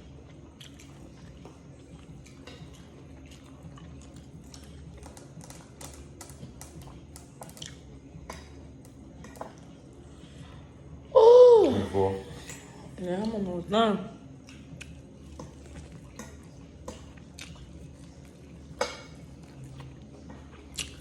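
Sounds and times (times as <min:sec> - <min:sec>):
person chewing food: 0:00.0 - 0:08.6, 0:14.4 - 0:21.0
low steady hum: 0:00.0 - 0:21.0.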